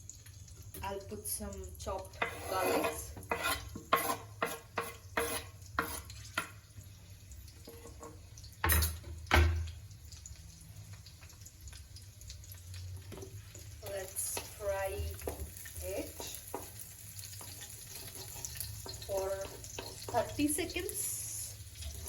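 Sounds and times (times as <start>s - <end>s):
oil sizzling in a pan: 0.0s - 22.0s
spatula clinking and scraping pan: 2.1s - 6.6s, 13.5s - 22.0s
knocks on a pan: 8.6s - 9.7s.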